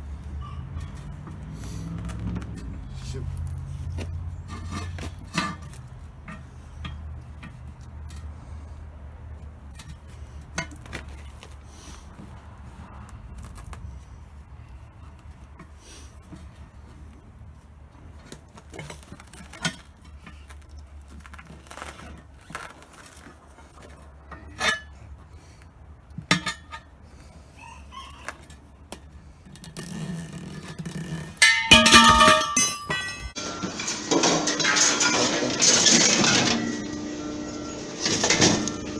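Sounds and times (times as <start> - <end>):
light metal clinks and knocks: 31.0 - 33.4
loud metal clatter with ringing: 31.4 - 36.9.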